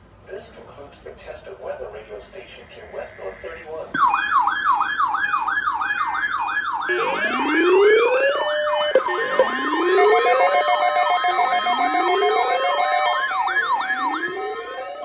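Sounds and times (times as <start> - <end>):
electronic siren sweeping: 4.0 - 15.0
pulsed beeping: 6.9 - 15.0.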